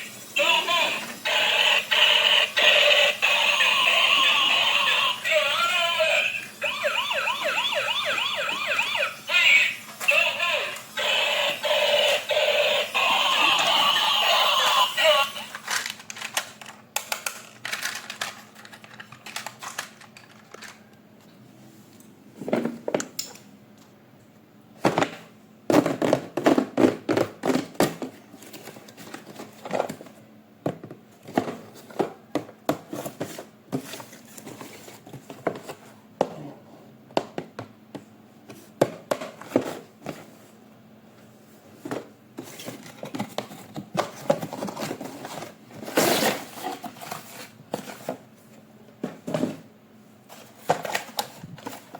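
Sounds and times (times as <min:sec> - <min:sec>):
plastic and cardboard crinkling: 0:41.7 - 0:48.4.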